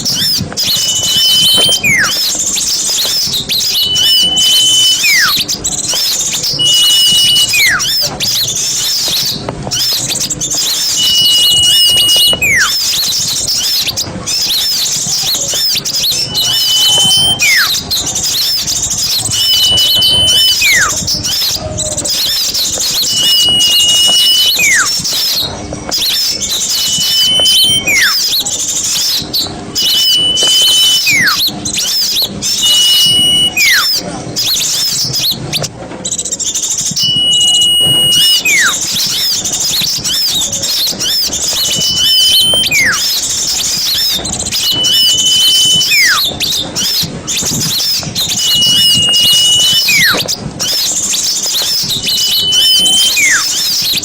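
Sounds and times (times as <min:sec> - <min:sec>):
bird whistle sliding down: 0:00.0 - 0:35.7, 0:36.8 - 0:54.0
songbirds twittering: 0:00.0 - 0:54.0.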